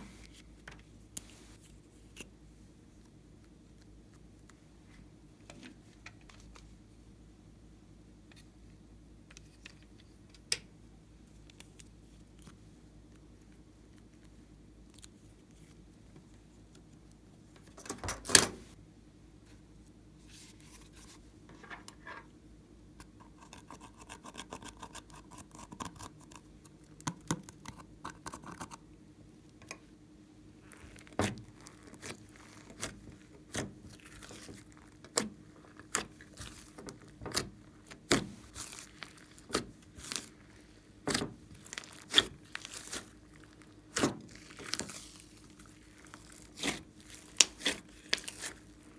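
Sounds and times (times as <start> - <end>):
slime crackling and popping: 30.6 - 48.9.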